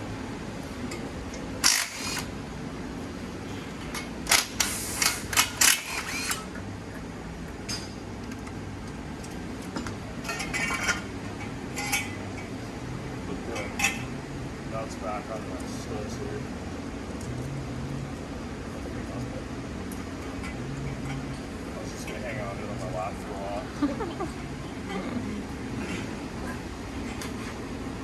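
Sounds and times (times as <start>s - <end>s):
low shop hum: 0.0s - 28.0s
metal tools clinking and clattering: 10.2s - 11.1s, 11.7s - 12.3s.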